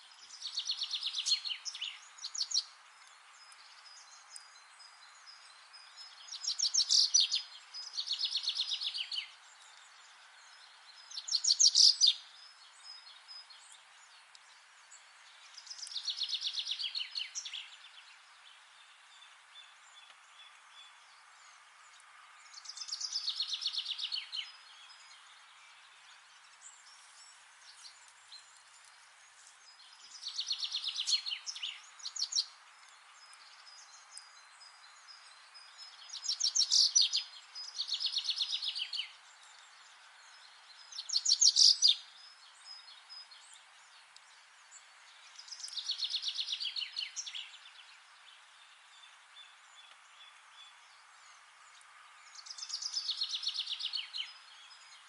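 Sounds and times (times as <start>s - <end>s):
faint background hiss: 0.0s - 55.0s
songbird trilling: 11.2s - 12.2s, 41.0s - 42.0s.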